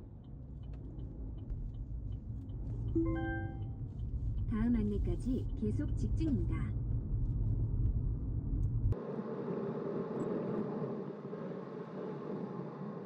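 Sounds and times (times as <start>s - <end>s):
car cabin road rumble: 0.0s - 9.0s.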